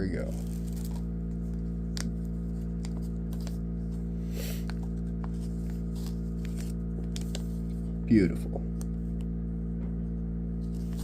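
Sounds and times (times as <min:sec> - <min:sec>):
low electrical hum: 0:00.0 - 0:11.0.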